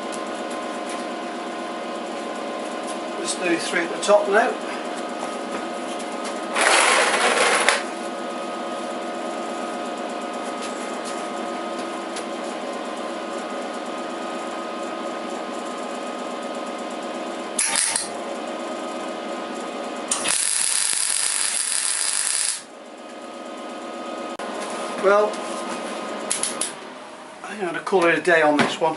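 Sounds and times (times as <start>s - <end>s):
machine hum: 0.0s - 28.9s
welding arc sizzle: 17.5s - 18.1s, 20.1s - 22.7s.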